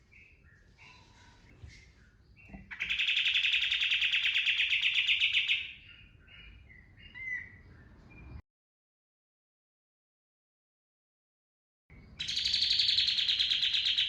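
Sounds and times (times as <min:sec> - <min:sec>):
bird chirps: 0:00.0 - 0:08.4, 0:11.9 - 0:14.0.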